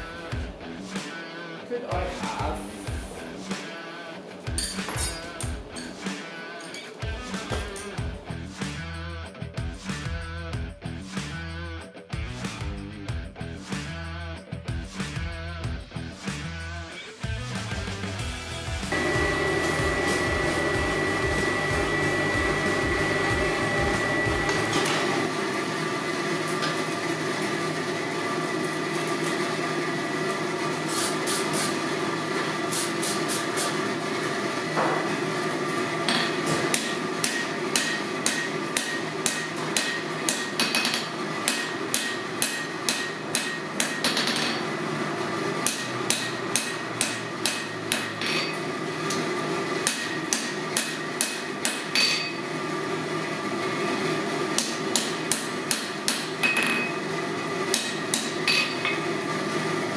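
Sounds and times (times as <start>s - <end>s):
hammer striking hot steel on anvil: 18.9s - 25.2s, 36.0s - 44.7s, 45.6s - 49.2s, 49.8s - 52.5s, 54.6s - 57.1s, 57.7s - 59.1s.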